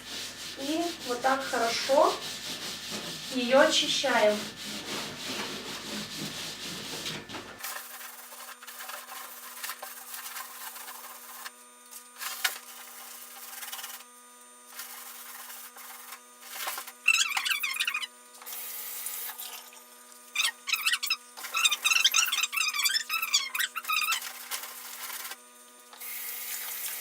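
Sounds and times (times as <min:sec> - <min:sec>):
cloth rubbing on a box: 0:00.0 - 0:11.6.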